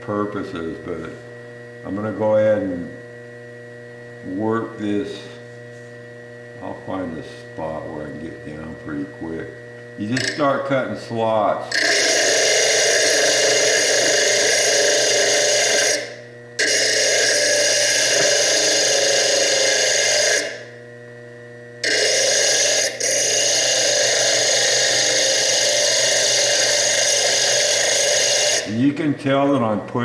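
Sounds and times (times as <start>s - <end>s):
lathe motor hum: 0.1s - 30.0s
disc grinding stone: 10.0s - 20.7s, 21.8s - 30.0s.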